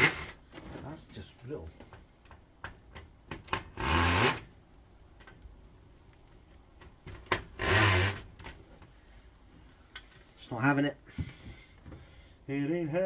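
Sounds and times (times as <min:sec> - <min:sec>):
drill bit grinding on screw: 0:07.6 - 0:08.2.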